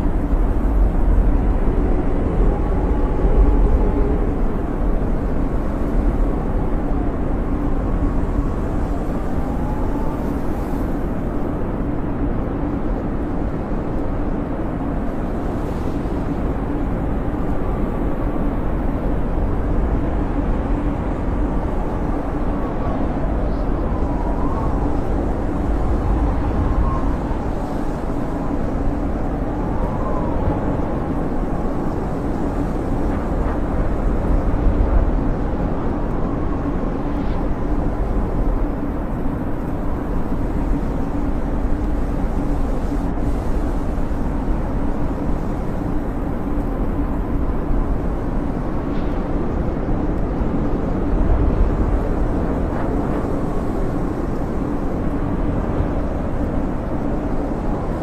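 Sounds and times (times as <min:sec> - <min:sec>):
faint wavering wind whistle: 0:00.0 - 0:58.0
snowstorm wind blowing: 0:00.0 - 0:58.0.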